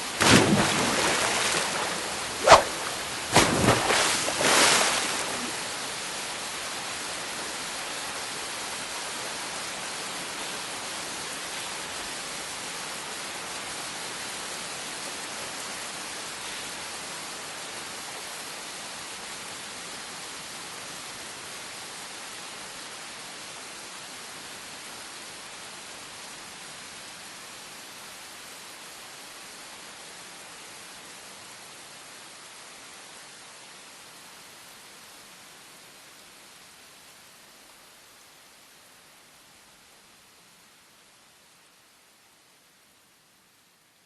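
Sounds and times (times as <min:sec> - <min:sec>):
steady rushing hiss: 0:00.0 - 0:00.2, 0:00.8 - 0:18.3.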